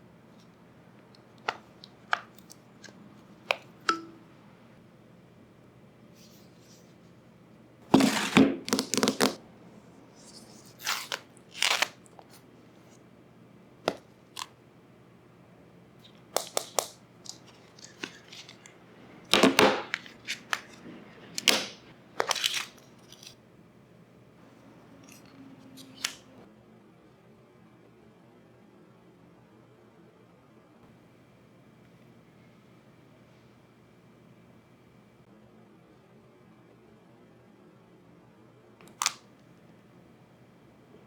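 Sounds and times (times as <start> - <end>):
paper and cardboard rustling: 7.9 - 9.4, 10.2 - 13.0, 16.4 - 23.4.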